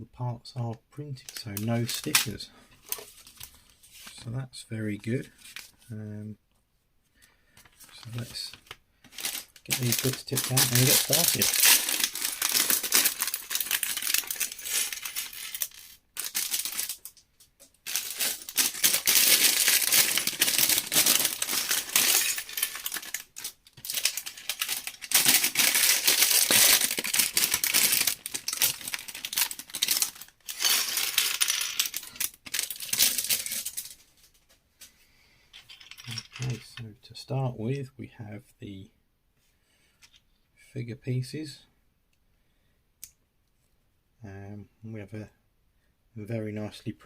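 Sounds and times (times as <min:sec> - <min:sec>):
plastic bags crinkling: 0:07.8 - 0:17.2, 0:17.8 - 0:34.4
plastic bricks clattering on hard surface: 0:17.9 - 0:33.9, 0:35.5 - 0:36.6.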